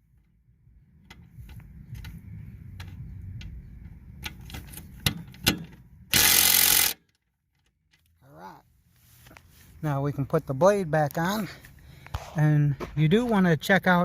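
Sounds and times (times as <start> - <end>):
tools clicking and knocking: 1.0 - 8.1
impact wrench burst: 6.1 - 7.0.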